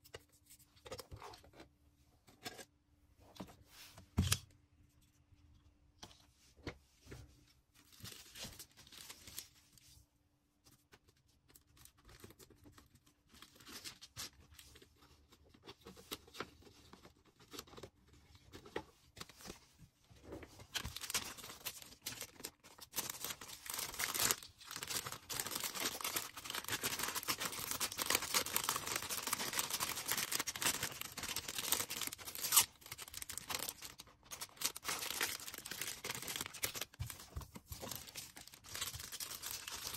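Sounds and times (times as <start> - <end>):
packaging crinkling and tearing: 20.6 - 39.9.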